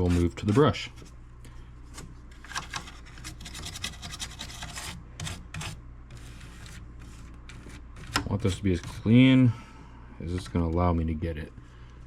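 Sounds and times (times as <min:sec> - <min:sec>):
brush scrubbing circuit board: 0:00.0 - 0:00.9, 0:02.8 - 0:09.2.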